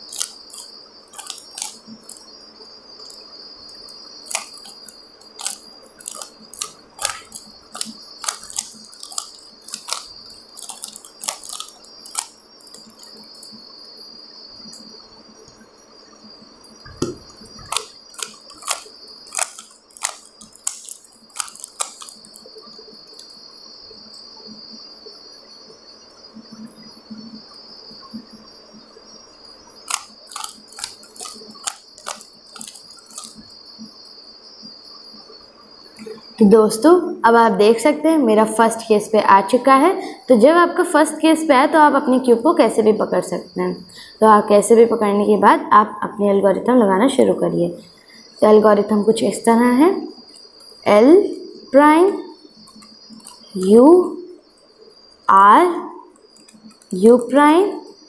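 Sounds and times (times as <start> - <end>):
puzzle cube plastic clicks: 0.0 - 2.2, 4.2 - 13.1, 16.9 - 22.5, 29.9 - 33.4, 52.7 - 54.2, 56.4 - 57.4
faint high-pitched whine: 0.0 - 58.0.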